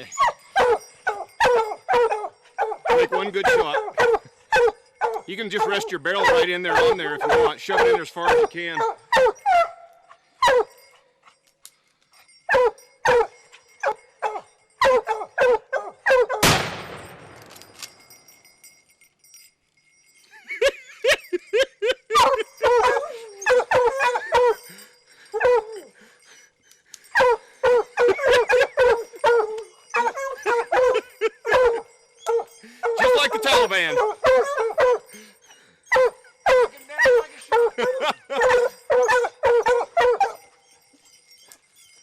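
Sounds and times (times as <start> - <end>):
hounds barking and baying: 0.0 - 11.4, 12.2 - 16.6, 20.4 - 42.0
rifle shot: 16.4 - 18.0.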